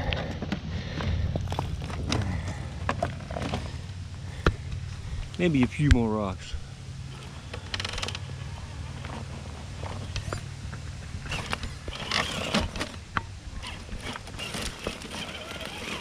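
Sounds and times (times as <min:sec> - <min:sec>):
tires crunching over rocks: 0:00.0 - 0:16.0
toy car drivetrain hum: 0:07.1 - 0:16.0.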